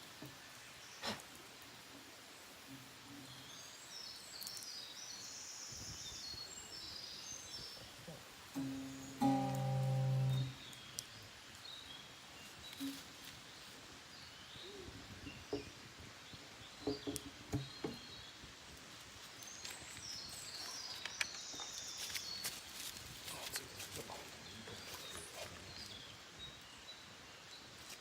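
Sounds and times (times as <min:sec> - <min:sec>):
birds chirping: 0:00.0 - 0:18.6, 0:19.3 - 0:28.0
wood fire crackling: 0:08.3 - 0:13.8.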